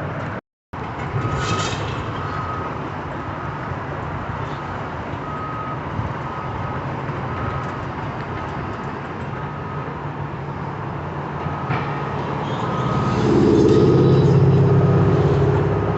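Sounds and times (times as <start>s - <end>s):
reversing alarm beeping: 1.2s - 2.8s, 5.2s - 8.0s, 9.4s - 10.7s, 11.4s - 14.3s.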